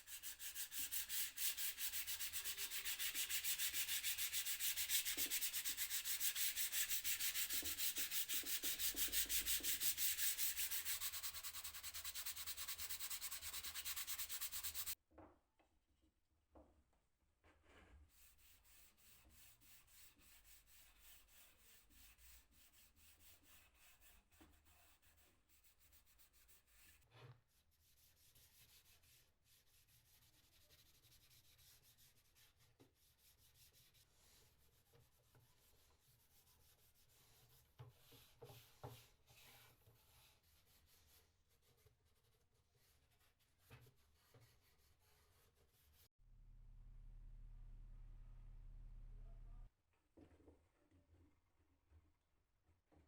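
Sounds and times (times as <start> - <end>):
hands rubbing wood: 0.2 - 15.0.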